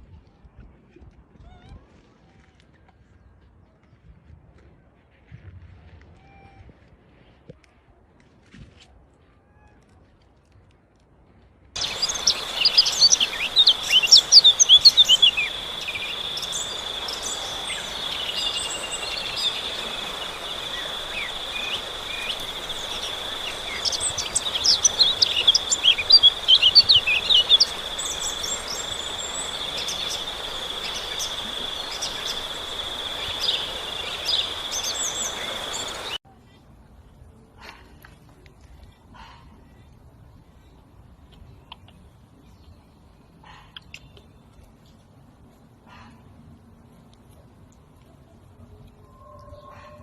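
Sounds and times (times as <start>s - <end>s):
bird chirps: 11.8s - 36.2s
high-pitched insect drone: 11.8s - 36.2s.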